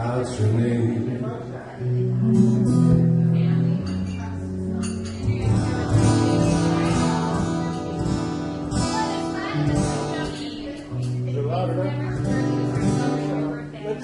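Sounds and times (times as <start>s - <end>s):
low bass notes: 0.0s - 10.2s
strummed acoustic guitar: 0.0s - 14.0s.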